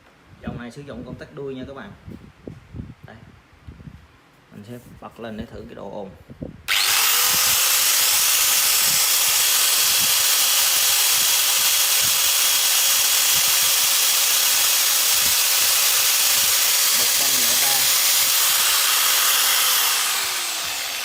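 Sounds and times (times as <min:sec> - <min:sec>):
angle grinder whining: 0:06.7 - 0:21.0.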